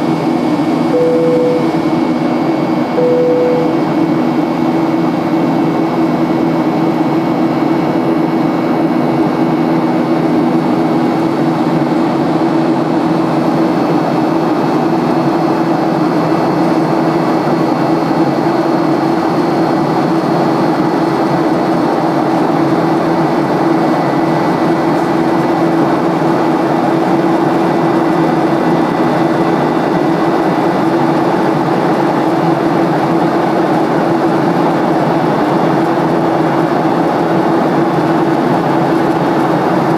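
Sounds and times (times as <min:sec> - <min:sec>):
airplane cabin drone: 0:00.0 - 0:39.9
low steady tone: 0:00.9 - 0:01.8, 0:03.0 - 0:04.0.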